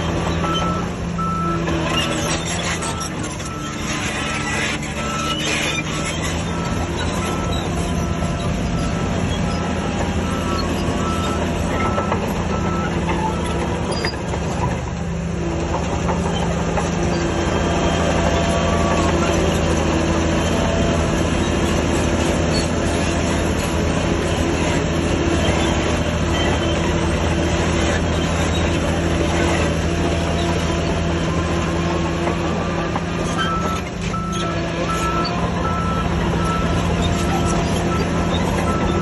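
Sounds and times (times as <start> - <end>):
bulldozer diesel engine running: 0.0 - 39.0
track clatter: 0.0 - 39.0
reversing alarm beeping: 0.4 - 14.2, 33.3 - 39.0.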